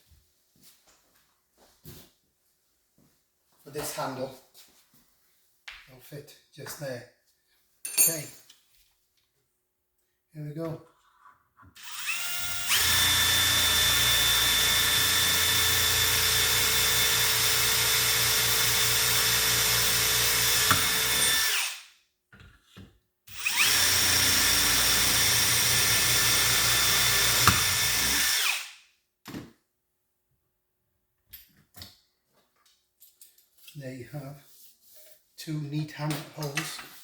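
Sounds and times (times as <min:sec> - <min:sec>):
electric drill boring: 0:11.8 - 0:21.8, 0:23.3 - 0:28.7.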